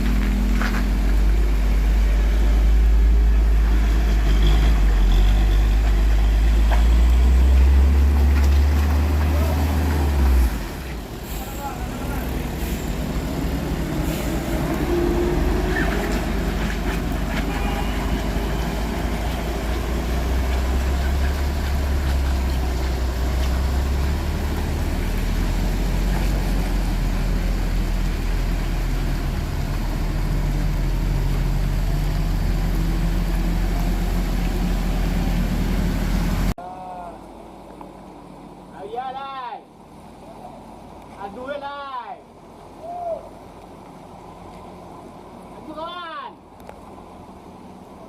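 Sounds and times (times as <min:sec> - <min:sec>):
truck diesel engine droning: 0:00.0 - 0:37.6
tyre hiss on wet road: 0:09.3 - 0:20.9.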